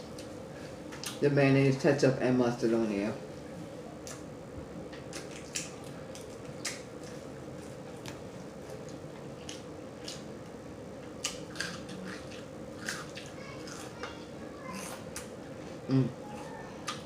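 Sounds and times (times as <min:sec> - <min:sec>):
faint steady hum: 0:00.0 - 0:17.0
chewing with wet mouth smacks: 0:05.1 - 0:10.3, 0:11.2 - 0:14.0.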